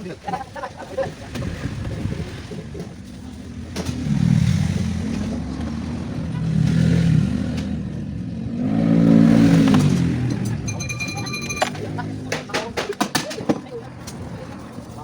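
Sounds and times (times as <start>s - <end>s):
vehicle engine revving: 3.5s - 10.7s.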